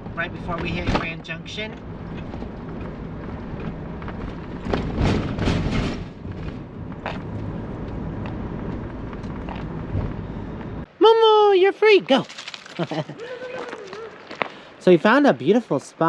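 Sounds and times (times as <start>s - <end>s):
engine and road drone: 0.0s - 11.0s
rattling and clatter: 1.9s - 7.5s.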